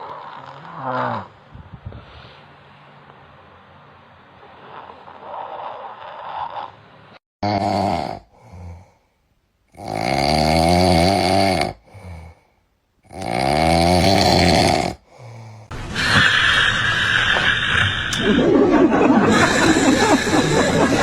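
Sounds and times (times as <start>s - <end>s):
person snoring loudly: 0.0s - 1.3s, 7.4s - 8.9s, 9.7s - 12.4s, 13.0s - 21.0s.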